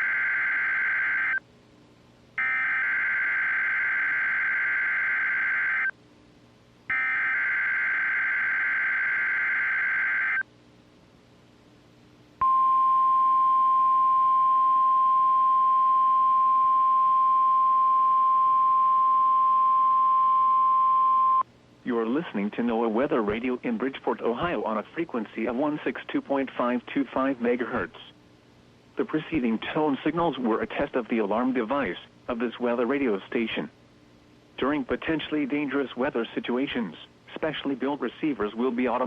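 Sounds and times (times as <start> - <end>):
steady warning alarm tone: 0.0 - 1.4, 2.4 - 5.9, 6.9 - 10.4.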